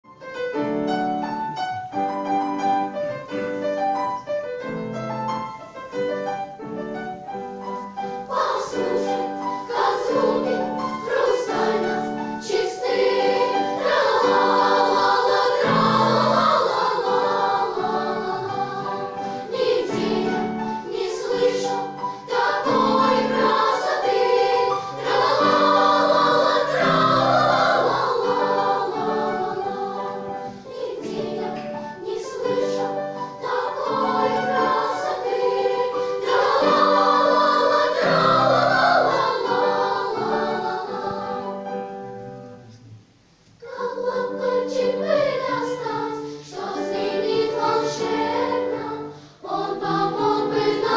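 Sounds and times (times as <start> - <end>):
children's choir singing: 0.0 - 42.9, 43.6 - 50.9
musical accompaniment: 0.0 - 50.9.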